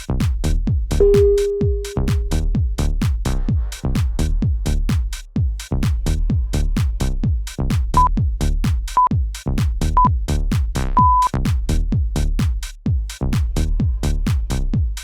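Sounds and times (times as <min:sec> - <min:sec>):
timer beeps: 0:01.0 - 0:02.3, 0:11.0 - 0:11.3.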